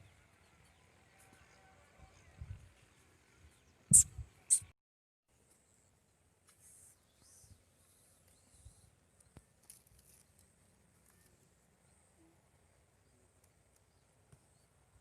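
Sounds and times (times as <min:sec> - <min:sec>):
faint outdoor hiss: 0:05.3 - 0:15.0.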